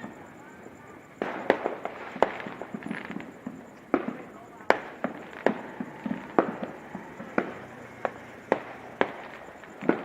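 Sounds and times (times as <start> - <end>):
firecrackers banging: 0.0 - 10.0.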